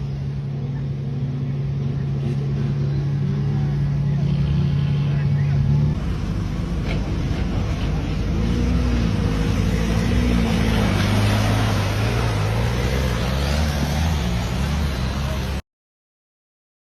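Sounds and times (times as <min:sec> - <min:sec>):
off-road vehicle engine rumbling: 0:00.0 - 0:15.6.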